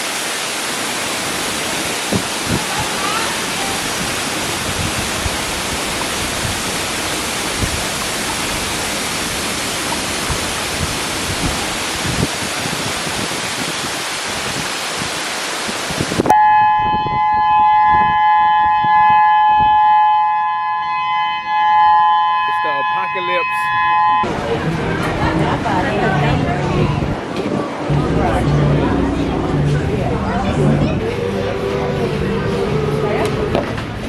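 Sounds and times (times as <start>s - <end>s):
waterfall rushing: 0.0s - 16.4s, 22.3s - 34.0s
high drone of held tones: 16.3s - 24.3s.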